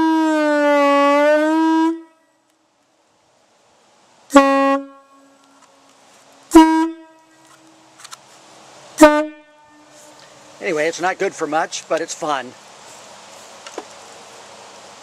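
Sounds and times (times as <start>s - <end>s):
train horn blasts: 0.0s - 2.4s, 4.3s - 5.7s, 6.5s - 7.8s, 9.0s - 10.3s.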